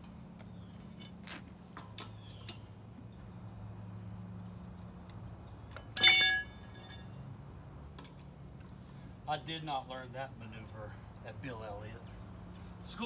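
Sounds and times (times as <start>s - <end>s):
lug wrench clanking on metal: 6.0s - 7.2s.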